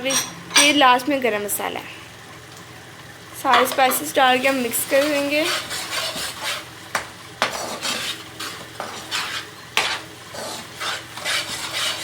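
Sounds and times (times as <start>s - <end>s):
onions sizzling in oil: 2.1s - 12.0s
utensil scraping a frying pan: 3.6s - 6.8s, 7.4s - 12.0s.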